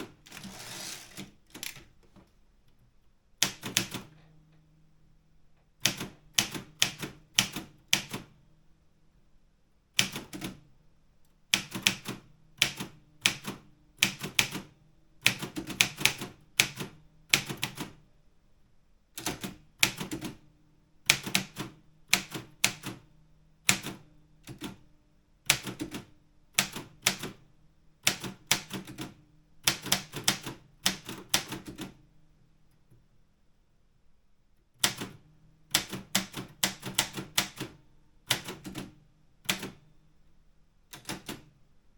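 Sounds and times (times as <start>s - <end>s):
typewriter keystrokes clattering: 0.0s - 2.1s, 35.8s - 38.9s, 41.0s - 41.5s.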